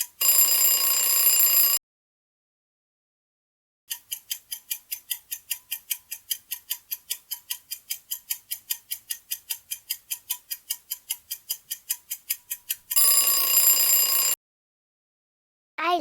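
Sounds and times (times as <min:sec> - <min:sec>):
clock-like timer ticking: 0:00.0 - 0:00.6, 0:03.9 - 0:13.7.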